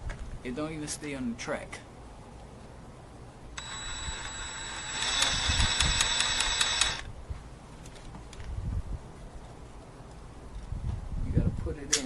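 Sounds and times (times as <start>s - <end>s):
jigsaw clicking: 3.6s - 7.0s
jigsaw motor whining: 3.6s - 7.1s.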